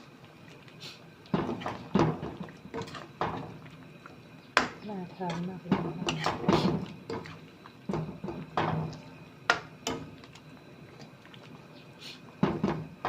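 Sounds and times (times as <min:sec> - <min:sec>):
kitchenware knocking and clattering: 0:12.4 - 0:12.9.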